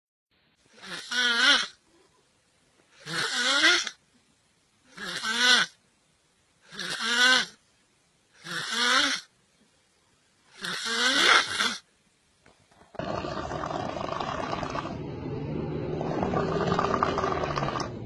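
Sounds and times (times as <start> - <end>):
person snoring: 0.8 - 1.8, 10.6 - 11.8, 12.9 - 18.0.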